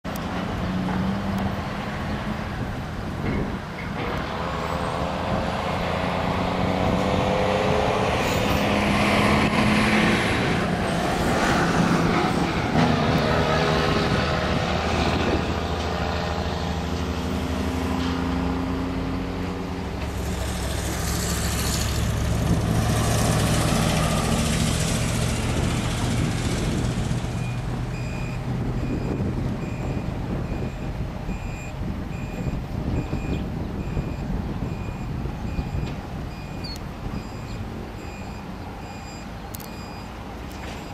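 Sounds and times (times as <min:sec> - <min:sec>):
heavy vehicle engines revving: 0:00.0 - 0:40.9
reversing beeper: 0:27.4 - 0:40.9.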